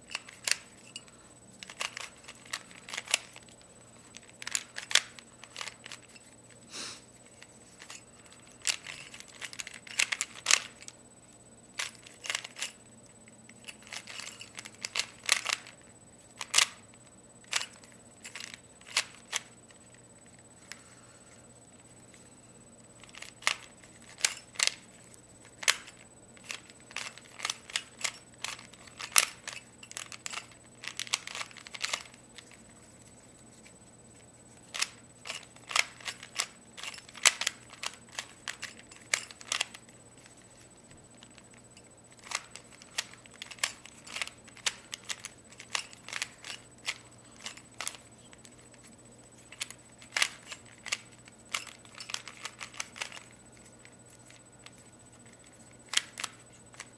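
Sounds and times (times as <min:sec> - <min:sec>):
plastic puzzle cube clicks: 0:13.6 - 0:15.8, 0:16.4 - 0:16.8, 0:25.5 - 0:32.5, 0:34.7 - 0:39.8, 0:49.5 - 0:53.3, 0:55.9 - 0:56.9.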